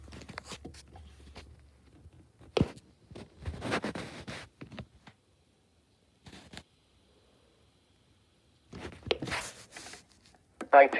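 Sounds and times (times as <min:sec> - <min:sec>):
rustling or scraping: 0:02.5 - 0:04.8, 0:08.7 - 0:10.4.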